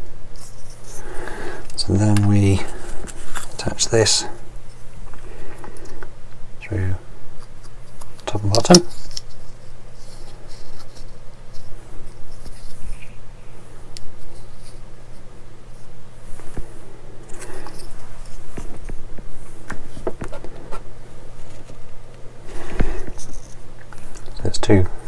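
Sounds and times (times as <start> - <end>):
steady low hum: 0.0 - 25.0
plastic parts clicking and rubbing: 7.4 - 13.2.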